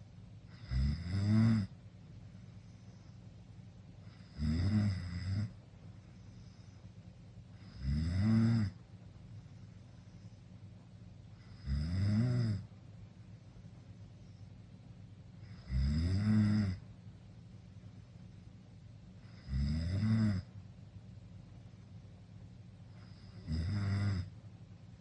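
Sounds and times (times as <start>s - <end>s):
person snoring: 0.5s - 1.7s, 4.0s - 5.5s, 7.6s - 8.8s, 11.4s - 12.7s, 15.4s - 16.8s, 19.2s - 20.5s, 23.0s - 24.3s.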